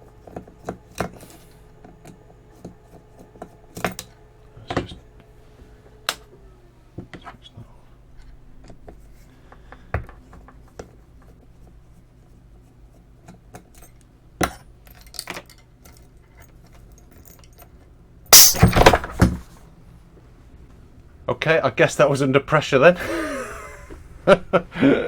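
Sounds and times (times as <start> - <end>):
compressed air rushing out: 18.4 - 19.2
parts clicking and knocking: 18.4 - 19.5.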